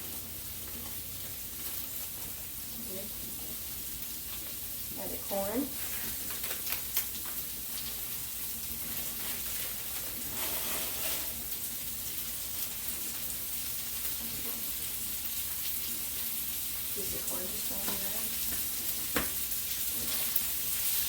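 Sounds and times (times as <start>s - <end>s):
vegetables sizzling in oil: 0.0s - 21.0s
sharp clicks of corn: 5.8s - 8.0s.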